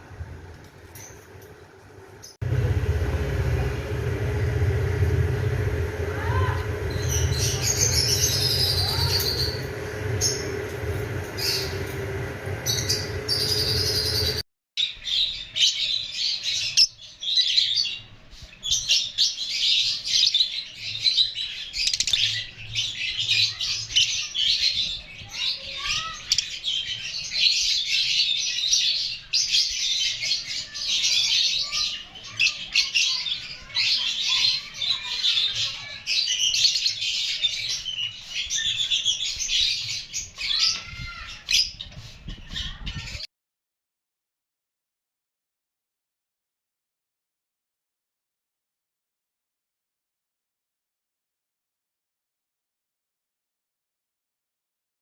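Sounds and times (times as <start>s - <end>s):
steady low hum: 0.0s - 14.4s
parrot chicks chirping and squawking: 2.0s - 43.2s
bird chirps: 6.6s - 14.4s.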